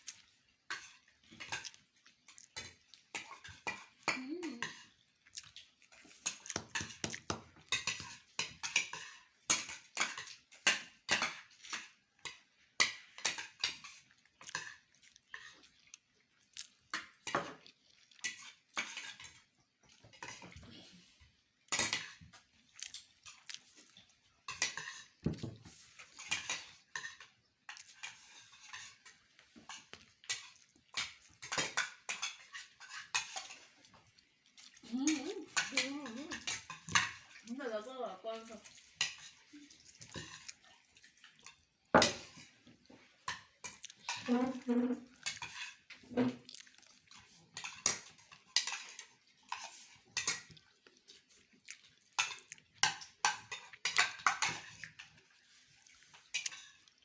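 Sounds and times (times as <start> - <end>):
cutlery clinking on plates: 2.4 - 5.0, 6.0 - 15.7, 18.2 - 20.6, 21.7 - 33.8, 35.2 - 37.4, 38.6 - 50.7, 52.2 - 55.3, 56.1 - 57.0.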